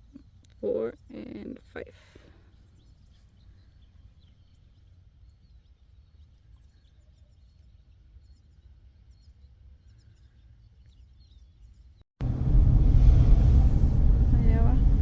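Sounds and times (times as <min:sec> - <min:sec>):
small birds chirping: 0:00.0 - 0:12.0
low background rumble: 0:12.2 - 0:15.0.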